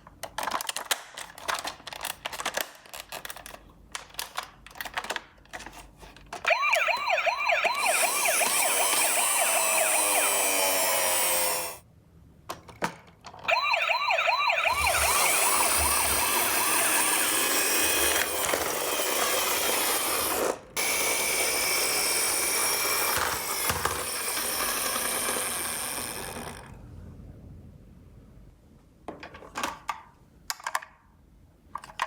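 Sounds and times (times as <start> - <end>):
toy sirens wavering: 6.5 - 11.8, 13.4 - 26.7.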